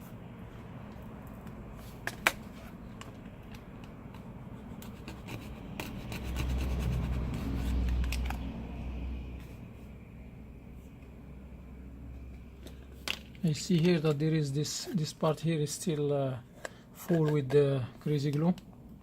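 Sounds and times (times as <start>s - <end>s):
hand tool scraping adhesive: 4.8s - 7.6s.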